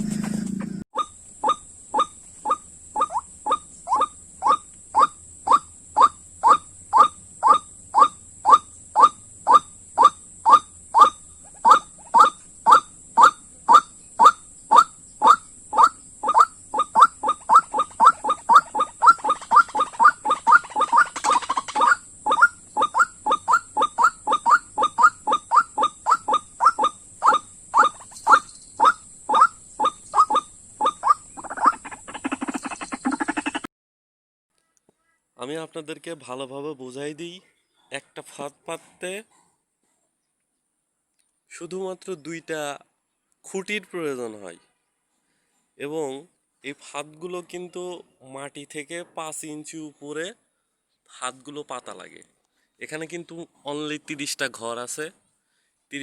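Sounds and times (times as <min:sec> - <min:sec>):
waterhen calling repeated notes: 0:01.0 - 0:33.7.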